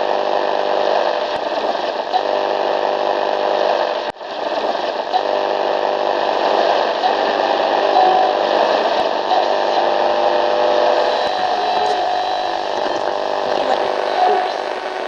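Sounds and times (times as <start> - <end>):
radio static hiss: 0.0 - 15.0
buzzing hum: 9.4 - 15.0.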